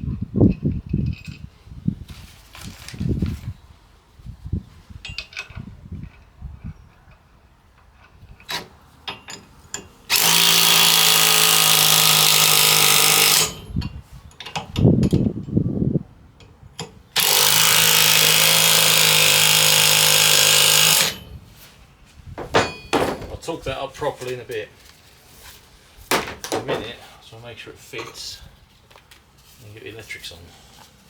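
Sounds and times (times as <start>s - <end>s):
knocks and clicks of handling tools: 8.0s - 15.3s, 16.4s - 21.4s, 22.4s - 23.6s, 26.1s - 27.1s
power driver spinning nuts: 10.1s - 13.8s, 17.2s - 21.4s, 22.4s - 23.4s.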